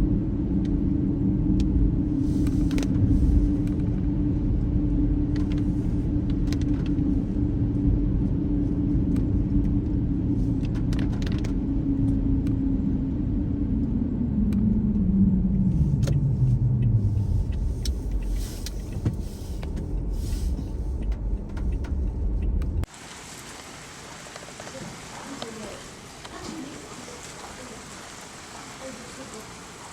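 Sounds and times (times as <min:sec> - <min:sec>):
car engine and road drone: 0:00.0 - 0:22.9.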